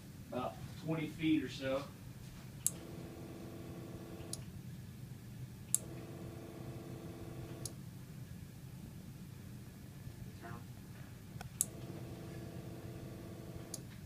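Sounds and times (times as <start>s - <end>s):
motor whirring: 2.7s - 4.4s, 5.8s - 7.7s, 11.6s - 13.8s.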